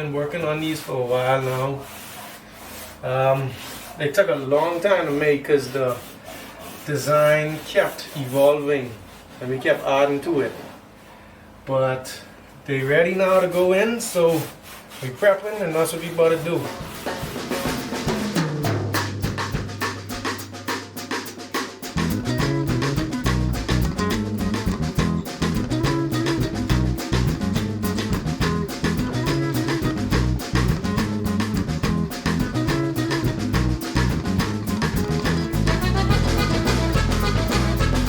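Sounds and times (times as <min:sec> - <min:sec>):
steady drum kit beat: 0:16.1 - 0:38.0
background band music: 0:16.7 - 0:38.0
bass guitar: 0:16.8 - 0:20.8, 0:21.8 - 0:38.0.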